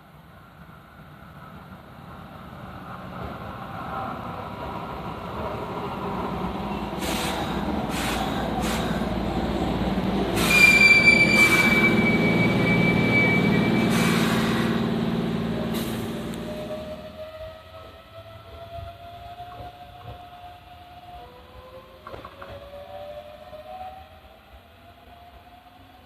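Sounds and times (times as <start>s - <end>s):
train wheels rumbling on rails: 0.5s - 24.0s
high wheel squeal: 10.3s - 17.0s.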